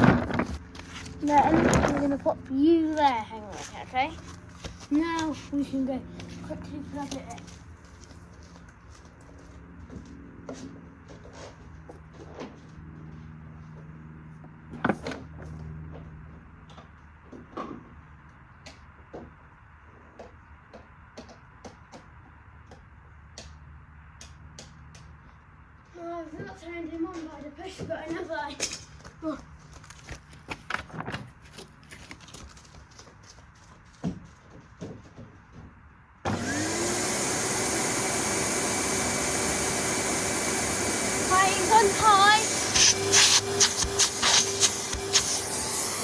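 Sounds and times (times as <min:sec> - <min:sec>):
vacuum cleaner motor whining: 0:36.3 - 0:46.0.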